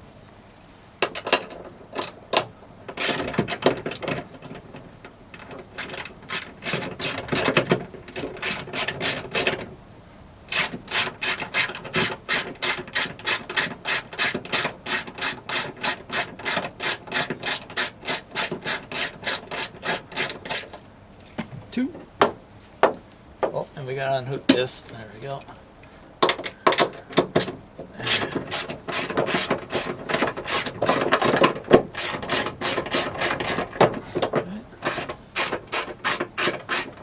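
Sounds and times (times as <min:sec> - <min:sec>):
ratchet clicking: 0:05.8 - 0:07.6, 0:08.3 - 0:09.5, 0:10.5 - 0:20.8, 0:27.4 - 0:33.7, 0:34.8 - 0:37.0.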